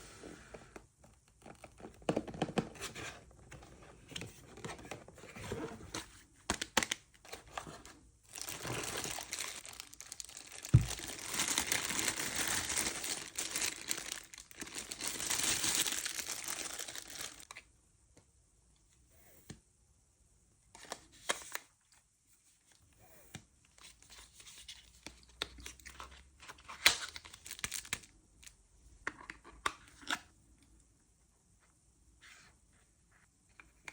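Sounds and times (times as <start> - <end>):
packaging crinkling and tearing: 6.6 - 17.6, 26.6 - 28.1.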